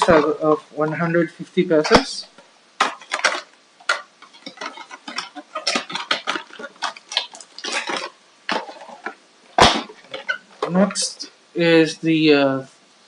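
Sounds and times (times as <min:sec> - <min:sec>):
cable and packaging being handled: 0:00.0 - 0:00.5, 0:01.8 - 0:11.2.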